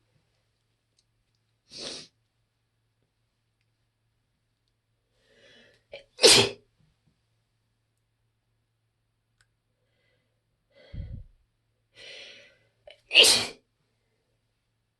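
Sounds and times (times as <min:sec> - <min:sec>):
woman sighing breath: 0:10.8 - 0:11.3
woman sneezing: 0:13.1 - 0:13.6.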